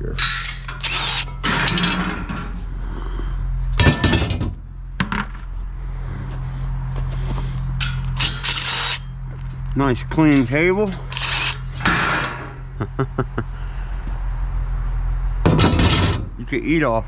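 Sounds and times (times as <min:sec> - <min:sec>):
metal pieces clanking: 0:00.0 - 0:02.7, 0:03.8 - 0:04.6, 0:07.8 - 0:09.1, 0:10.3 - 0:12.7, 0:15.5 - 0:16.3
low hum: 0:00.0 - 0:16.8.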